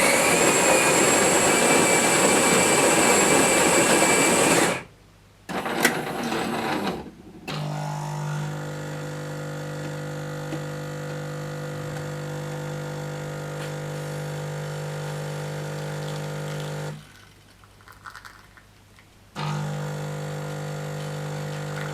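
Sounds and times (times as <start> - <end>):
coffee machine whirr: 0.0 - 4.9, 5.5 - 17.2, 19.4 - 21.9
pump humming: 7.5 - 17.0, 19.4 - 21.9.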